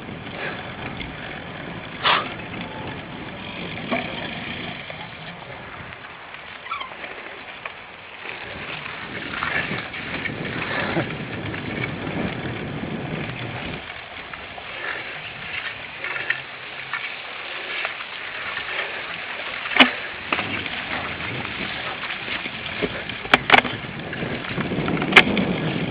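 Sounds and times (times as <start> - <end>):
bike clicks and rattles: 0.0 - 25.9
bike tyre and riding noise: 0.0 - 25.9.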